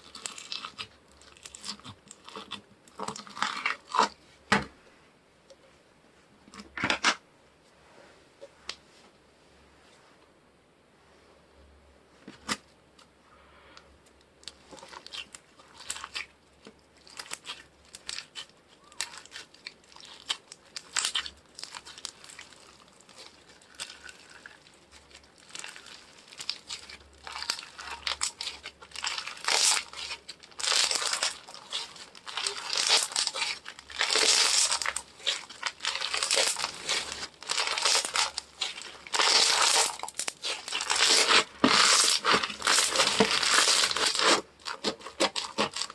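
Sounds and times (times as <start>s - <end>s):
hands crinkling packaging: 17.0s - 45.9s.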